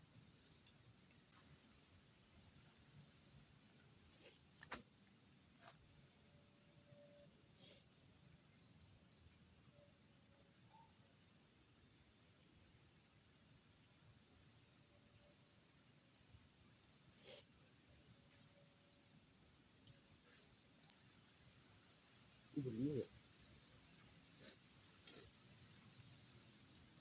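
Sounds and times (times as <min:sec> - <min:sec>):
faint night background: 0:00.0 - 0:27.0
insect chirping high trills: 0:02.7 - 0:04.1, 0:15.2 - 0:15.8, 0:20.2 - 0:21.9.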